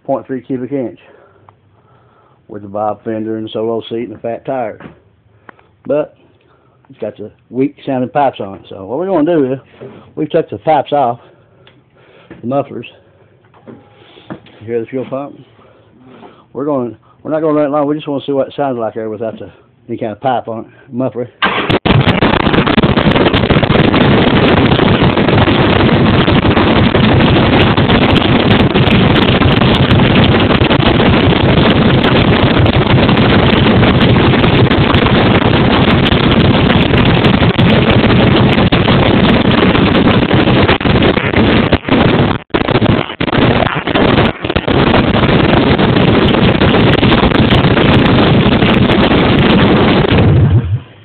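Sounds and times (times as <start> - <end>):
loud motorcycle engine open exhaust: 21.9 - 51.0.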